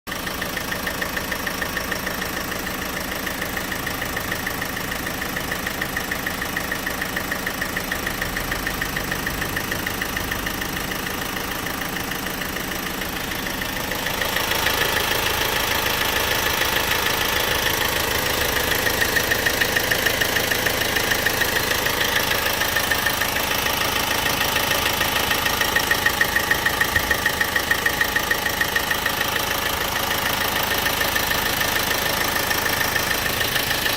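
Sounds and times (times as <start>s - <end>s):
diesel engine idling with ticking: 0.1s - 33.9s.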